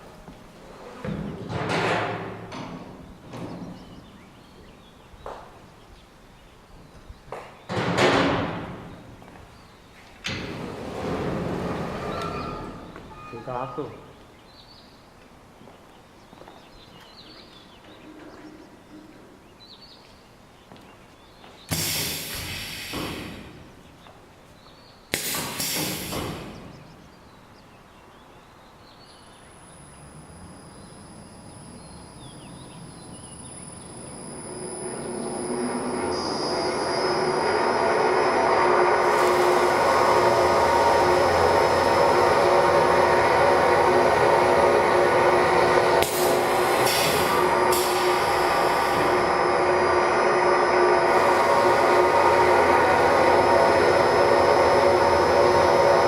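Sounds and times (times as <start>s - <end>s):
bursts of hiss: 21.7s - 23.6s
cutting machine hum and whine: 29.4s - 56.0s.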